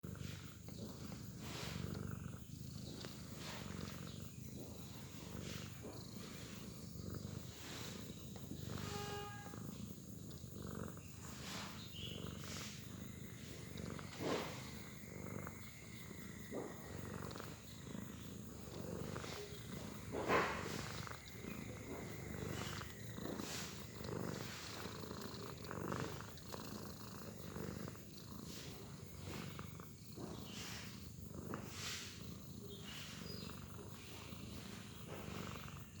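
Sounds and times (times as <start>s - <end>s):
cat snoring: 0.0s - 36.0s.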